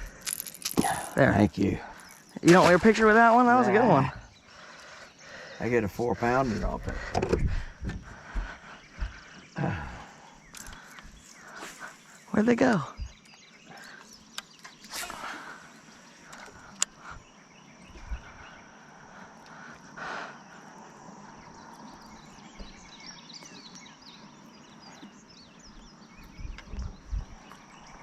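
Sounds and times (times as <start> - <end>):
bird chirps: 0.8 - 28.0
low bumps: 5.9 - 11.2.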